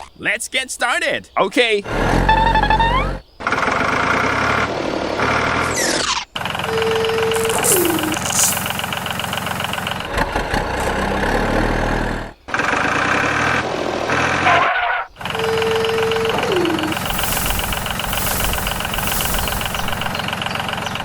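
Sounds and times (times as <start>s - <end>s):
tone sliding down in pitch: 2.3s - 3.2s, 7.3s - 8.6s, 15.6s - 19.4s
tractor engine idling: 6.3s - 21.0s.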